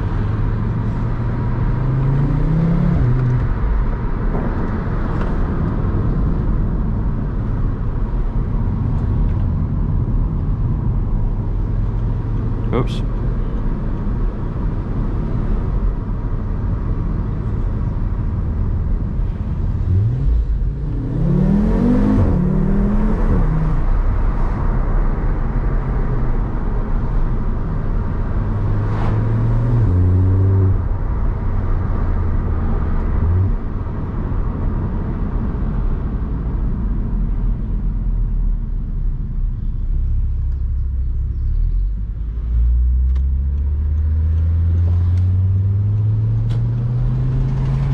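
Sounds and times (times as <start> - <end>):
car engine revving: 0.0 - 6.1, 19.7 - 24.4, 27.9 - 31.0.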